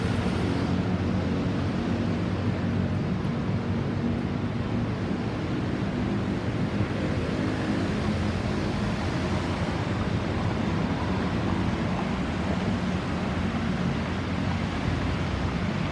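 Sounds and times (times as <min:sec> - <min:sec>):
road traffic noise: 0:00.0 - 0:02.6, 0:05.9 - 0:15.9.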